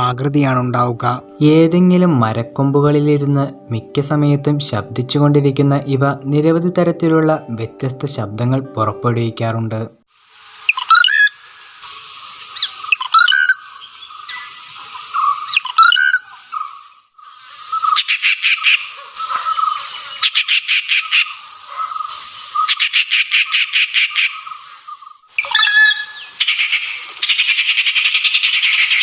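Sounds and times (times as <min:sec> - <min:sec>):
bird gliding calls: 0:10.6 - 0:29.0.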